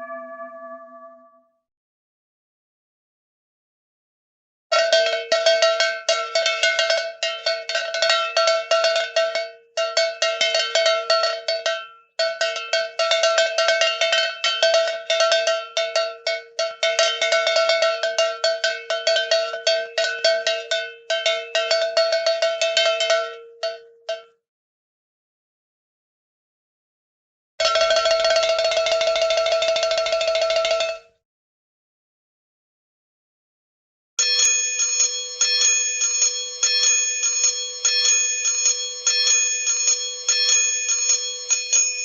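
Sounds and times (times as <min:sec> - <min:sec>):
metal bell clanking rapidly: 0:04.8 - 0:23.4, 0:27.6 - 0:31.0, 0:34.2 - 0:42.0.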